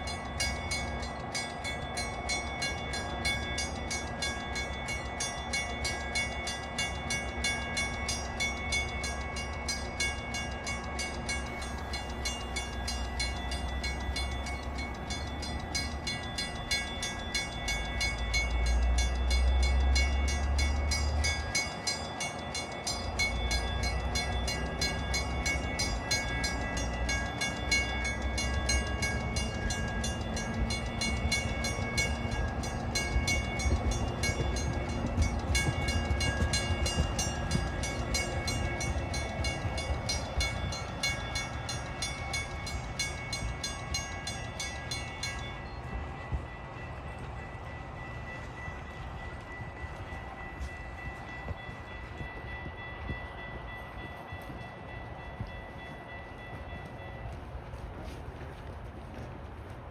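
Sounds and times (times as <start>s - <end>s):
crossing bell ringing: 0.0s - 59.3s
train rumble: 0.0s - 59.9s
wind buffeting microphone: 28.3s - 59.9s.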